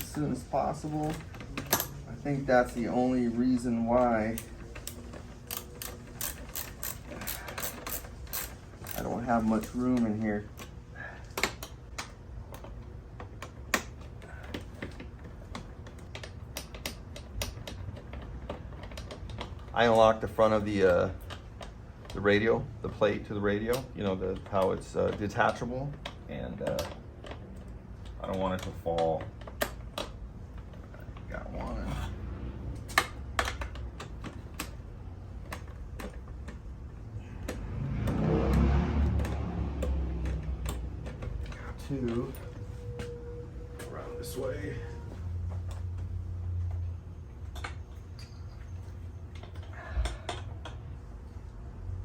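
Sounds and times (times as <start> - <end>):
screwdriver and metal parts clicking: 0.0 - 22.5, 32.8 - 43.2.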